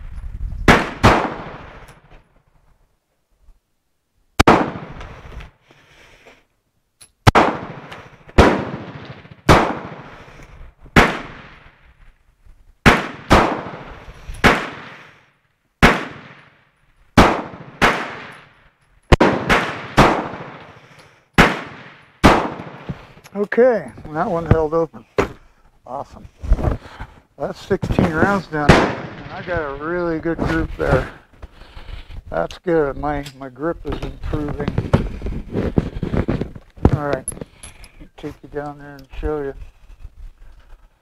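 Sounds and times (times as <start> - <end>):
pistol shots: 0.7 - 2.0, 4.4 - 5.2, 7.2 - 10.2, 11.0 - 11.7, 12.8 - 15.1, 15.8 - 16.6, 17.2 - 18.5, 19.1 - 20.8, 21.4 - 23.1, 28.6 - 29.5.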